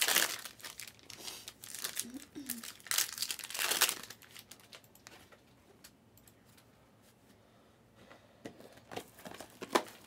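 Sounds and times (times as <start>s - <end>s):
packaging crinkling: 0.0s - 4.8s, 8.8s - 10.0s.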